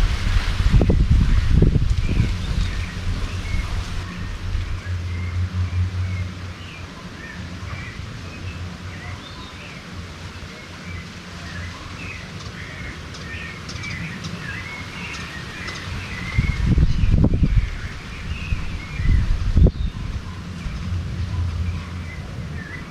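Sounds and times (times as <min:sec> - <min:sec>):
outdoor hiss: 0:00.0 - 0:05.2
birds chirping: 0:00.1 - 0:22.9.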